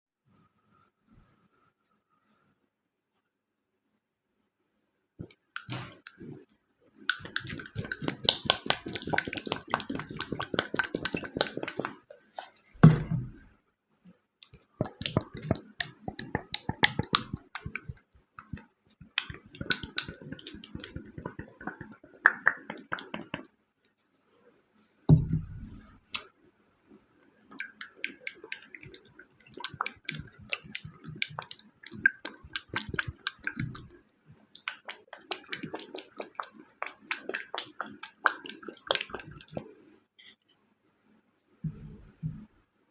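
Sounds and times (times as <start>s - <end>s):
dull heavy thuds: 12.8s - 13.5s, 25.1s - 26.0s.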